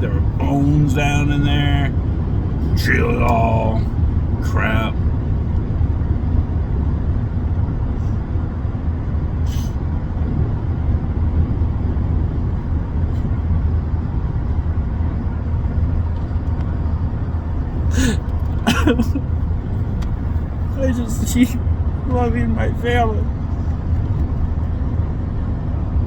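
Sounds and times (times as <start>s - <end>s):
car cabin road rumble: 0.0s - 26.0s
person breathing: 17.9s - 18.3s.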